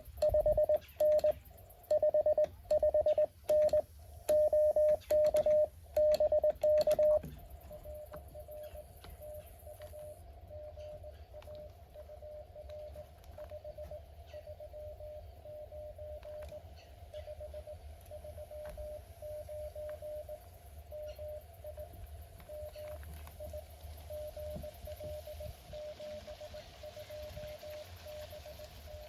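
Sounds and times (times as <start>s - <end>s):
morse code tone: 0.0s - 29.0s
faint clicks: 0.1s - 14.0s.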